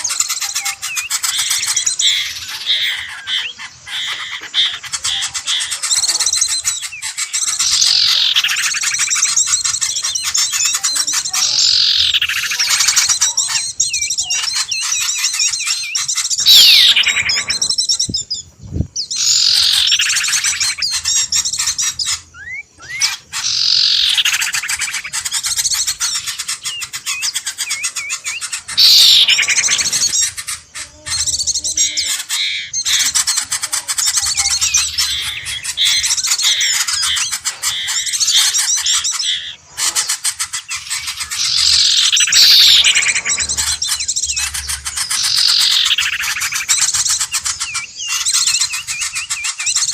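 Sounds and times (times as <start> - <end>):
small birds chirping and squawking: 0.0 - 49.9
sharp downward-sweeping bird call: 6.8 - 14.8, 15.4 - 18.3, 19.0 - 25.2, 26.4 - 30.2, 40.8 - 46.9.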